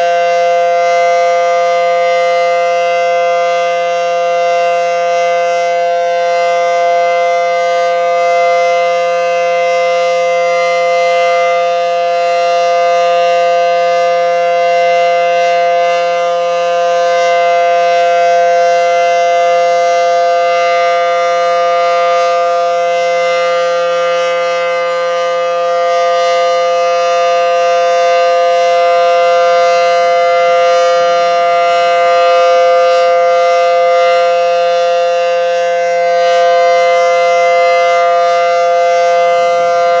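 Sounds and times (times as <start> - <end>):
dual-tone warning siren: 0.0 - 40.0.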